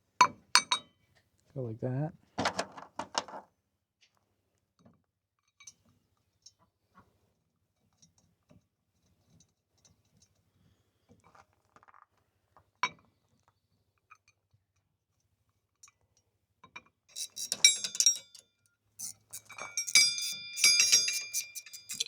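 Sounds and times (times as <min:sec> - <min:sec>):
metal parts clicking: 0:17.1 - 0:18.4, 0:19.0 - 0:22.0.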